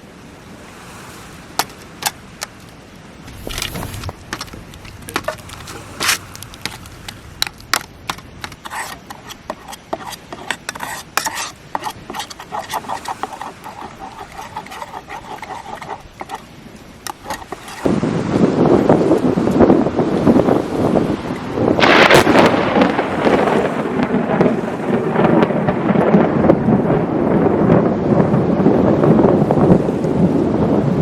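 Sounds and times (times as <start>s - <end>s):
objects being handled: 1.6s - 17.9s.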